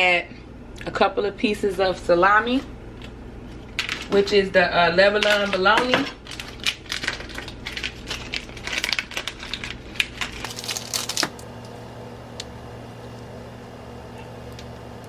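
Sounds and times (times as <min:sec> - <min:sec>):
steady low hum: 0:00.0 - 0:15.0
hands handling meat packaging: 0:05.2 - 0:11.4.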